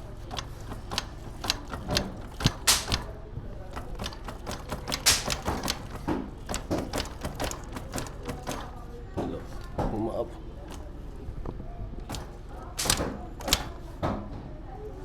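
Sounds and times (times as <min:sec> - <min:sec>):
metallic clicks of tools: 0:00.3 - 0:03.1, 0:03.7 - 0:08.6, 0:12.1 - 0:13.8.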